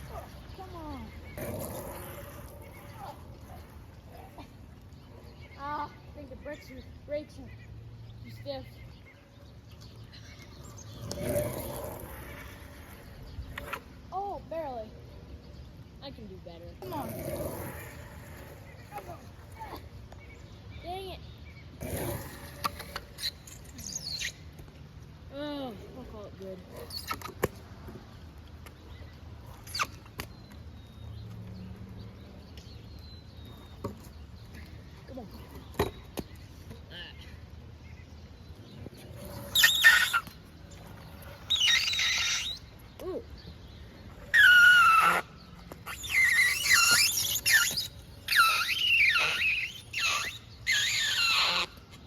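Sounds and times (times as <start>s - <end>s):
scooter wheels rolling rumble: 0.0s - 6.7s, 8.9s - 14.5s, 16.7s - 52.0s
scooter squeak: 21.9s - 24.5s, 39.1s - 42.8s, 44.2s - 52.0s
scooter brake squealing: 39.4s - 40.3s, 45.8s - 51.7s.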